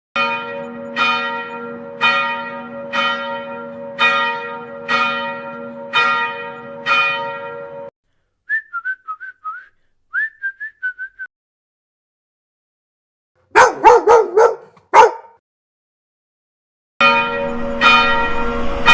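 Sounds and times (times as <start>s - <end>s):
large bell tolling: 0.2s - 7.9s, 17.0s - 18.9s.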